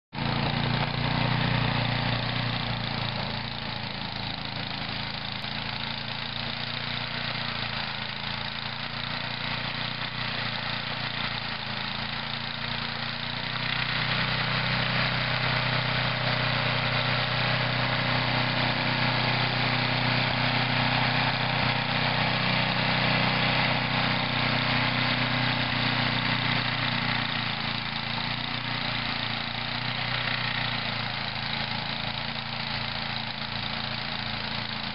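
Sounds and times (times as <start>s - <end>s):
snow thrower engine running: 0.1s - 34.9s.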